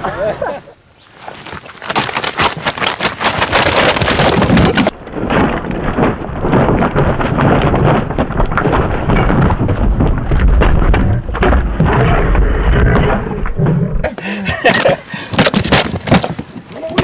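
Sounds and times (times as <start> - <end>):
wind buffeting microphone: 4.3 - 13.6.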